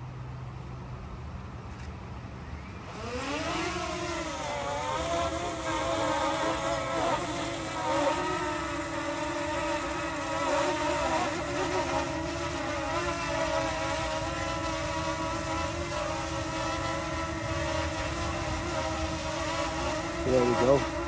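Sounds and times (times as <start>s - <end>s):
drone propellers whining: 1.8s - 21.0s.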